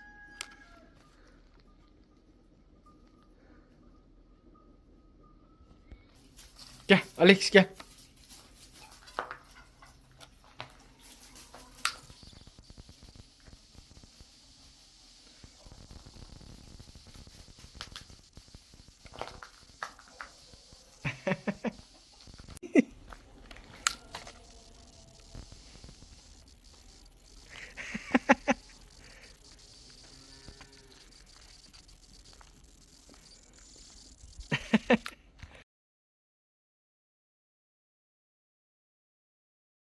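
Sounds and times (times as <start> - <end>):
high-pitched electronic tone: 11.9 - 22.6, 23.9 - 35.1.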